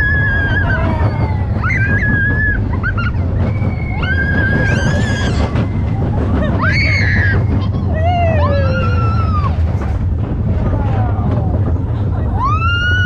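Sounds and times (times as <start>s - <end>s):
riders screaming: 0.0s - 10.0s
roller coaster rumble: 0.0s - 13.0s.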